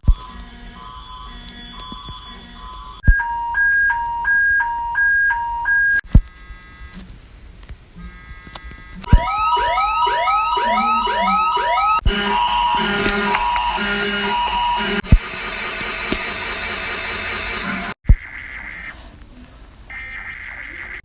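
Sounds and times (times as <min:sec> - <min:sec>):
two-note alert tones: 0:09.1 - 0:15.3
sweeping rising and falling tones: 0:09.1 - 0:18.0.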